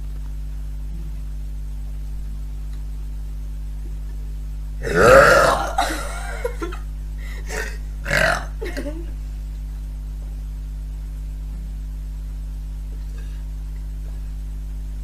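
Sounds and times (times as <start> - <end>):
low hum: 0.0 - 15.0
woman burping: 4.8 - 6.7, 7.4 - 9.1.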